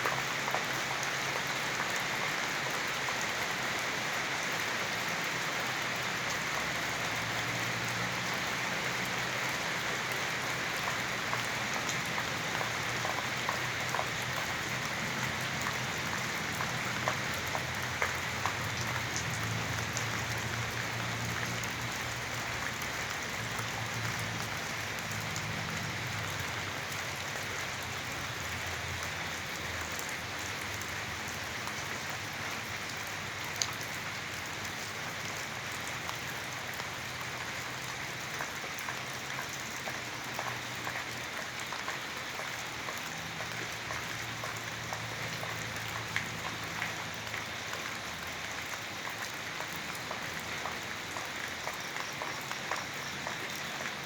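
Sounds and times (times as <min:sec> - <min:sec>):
steady rain falling: 0:00.0 - 0:54.0.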